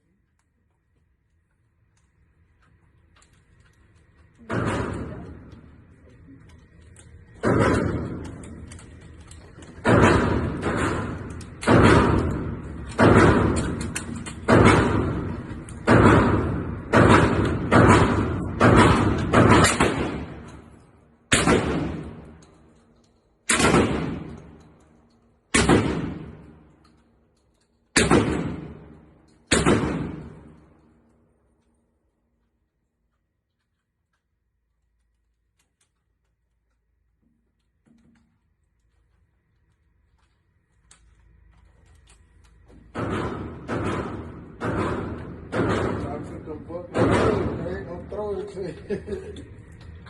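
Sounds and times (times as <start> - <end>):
shotgun shots echoing: 4.5 - 5.7, 7.4 - 8.9, 9.6 - 22.5, 23.5 - 24.8, 25.5 - 26.7, 27.9 - 30.8, 42.9 - 48.1.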